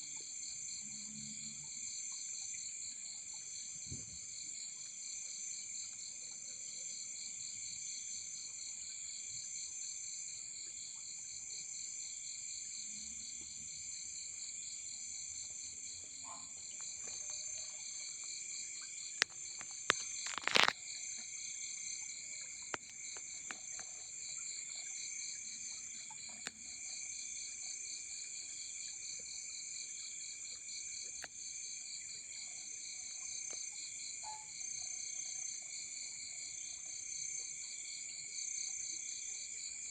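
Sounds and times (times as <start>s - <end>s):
forest insects trilling: 14.8s - 36.5s.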